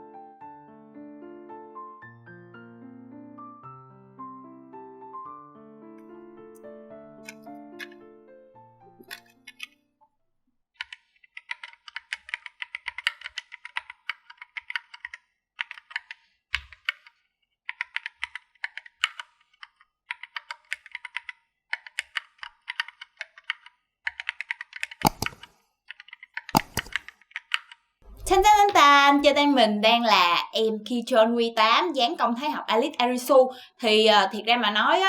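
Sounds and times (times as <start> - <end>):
mechanical keyboard typing: 10.8 - 29.4.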